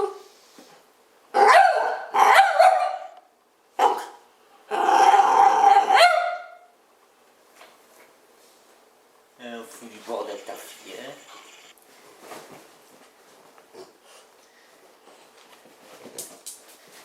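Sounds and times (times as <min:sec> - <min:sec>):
dog growling and barking: 0:01.4 - 0:03.1, 0:03.8 - 0:06.5.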